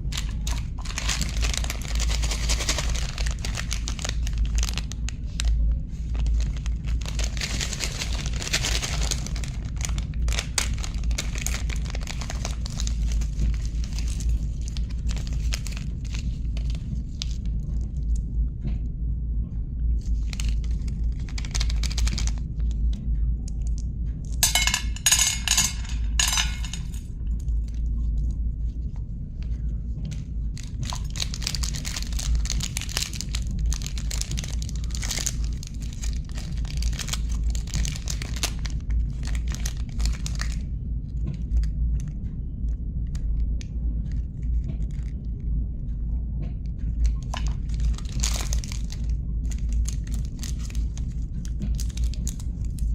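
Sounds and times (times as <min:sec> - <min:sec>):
wrappers crinkling and tearing: 0:00.0 - 0:17.8, 0:20.0 - 0:22.8, 0:30.1 - 0:40.7, 0:47.0 - 0:52.9
low hum: 0:00.0 - 0:52.9.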